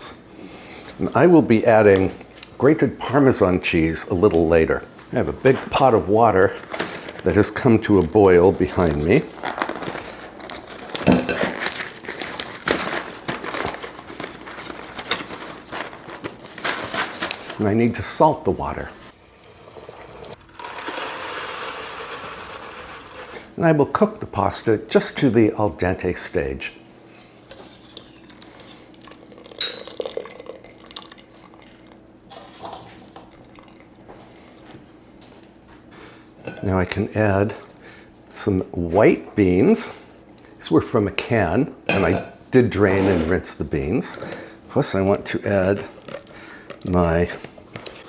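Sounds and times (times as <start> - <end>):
water boiling in a pot: 28.6 - 34.1
metal cookware clinking: 29.6 - 30.1.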